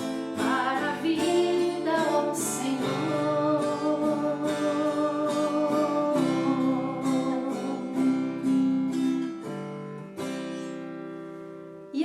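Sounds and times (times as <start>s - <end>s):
acoustic guitar strumming chords: 0.0s - 12.0s.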